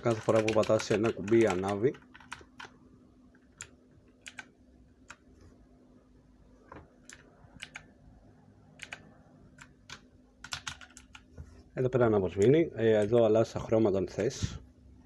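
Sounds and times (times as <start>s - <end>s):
mechanical keyboard clicks: 0.0s - 2.8s, 3.4s - 5.2s, 7.0s - 7.9s, 8.8s - 11.3s.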